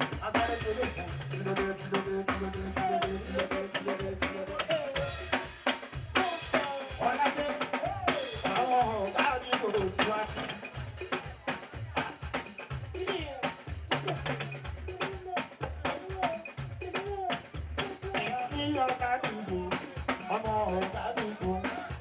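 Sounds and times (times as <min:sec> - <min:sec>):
bass line: 0:00.0 - 0:05.4
drum kit beat: 0:00.0 - 0:22.0.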